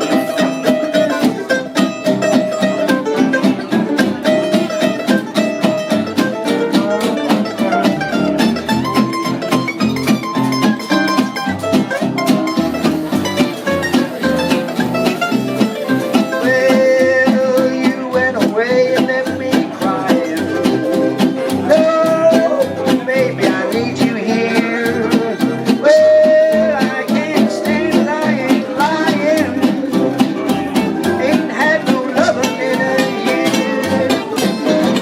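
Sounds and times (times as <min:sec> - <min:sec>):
lead guitar bending notes: 0:00.0 - 0:35.0
live country blues band: 0:00.0 - 0:35.0.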